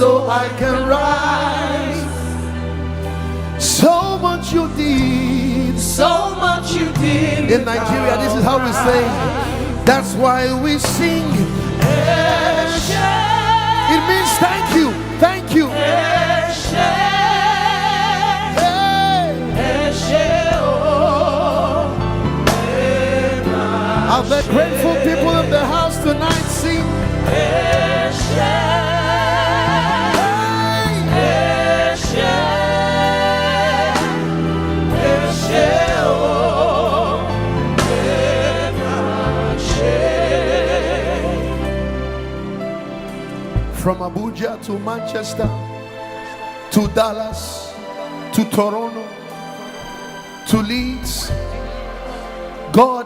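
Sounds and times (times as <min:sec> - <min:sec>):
band playing backing music: 0:00.0 - 0:53.0
voices singing gospel song: 0:00.0 - 0:53.0
person singing with vibrato: 0:04.8 - 0:15.7
sustained low accompaniment: 0:04.8 - 0:17.3.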